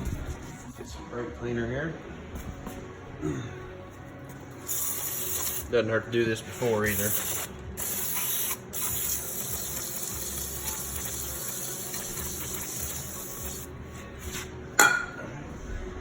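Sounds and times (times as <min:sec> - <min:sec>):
aerosol can spraying hiss: 0:04.7 - 0:05.7, 0:06.7 - 0:13.7.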